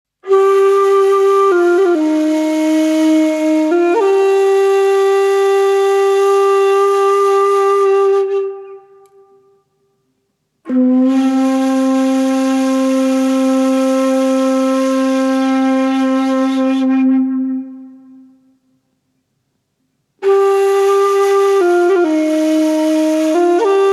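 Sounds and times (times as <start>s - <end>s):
flute-like instrument long notes: 0.2s - 9.7s, 10.7s - 18.6s, 20.2s - 23.9s.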